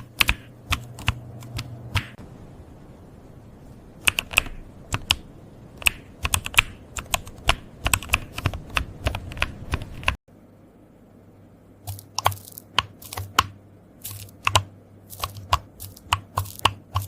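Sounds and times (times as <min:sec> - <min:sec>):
computer keyboard typing: 0:00.0 - 0:02.2, 0:04.0 - 0:10.2, 0:11.9 - 0:17.0.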